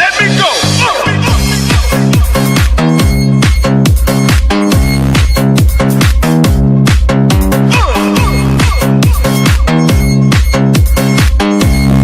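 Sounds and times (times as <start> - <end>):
electronic dance music: 0.0 - 12.0
synth chords: 0.0 - 12.0
kick drum beat: 1.3 - 12.0.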